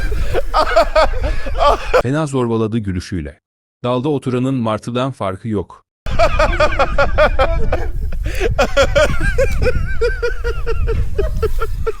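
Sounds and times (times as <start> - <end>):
person laughing shrilly: 0.0 - 2.0, 6.1 - 12.0.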